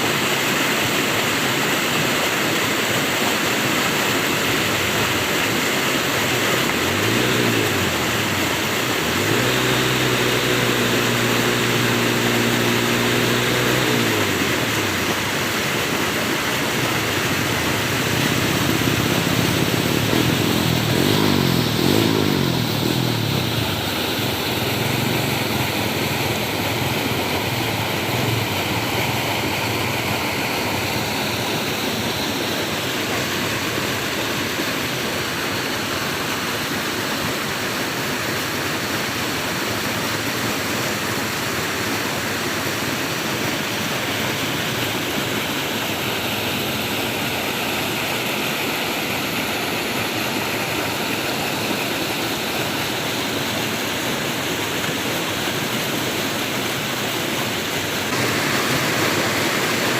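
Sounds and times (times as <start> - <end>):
flowing water rushing: 0.0 - 59.9
passing engine: 4.3 - 36.2
motor humming: 4.5 - 29.0, 58.1 - 59.9.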